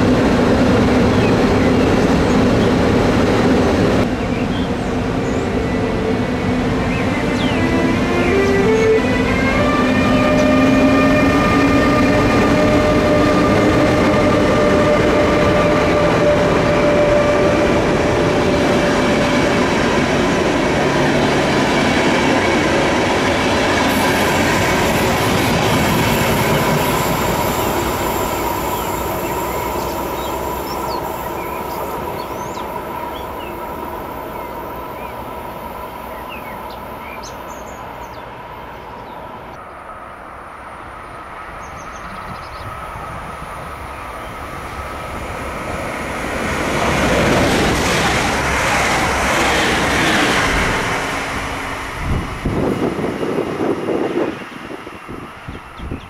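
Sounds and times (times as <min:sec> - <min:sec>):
electric train passing: 0:00.0 - 0:56.0
birds chirping: 0:06.8 - 0:12.5, 0:28.5 - 0:39.8, 0:41.5 - 0:43.0.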